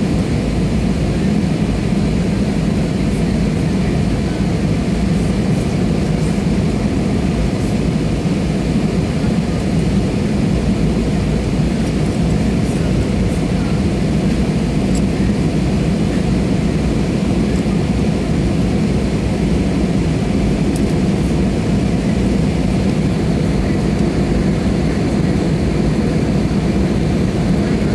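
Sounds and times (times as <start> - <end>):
aeroplane engine drone: 0.0 - 27.9.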